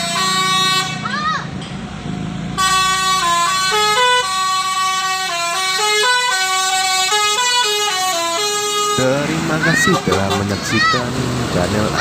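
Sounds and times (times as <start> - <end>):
musical bus horn tune: 0.0 - 1.2, 2.5 - 10.7.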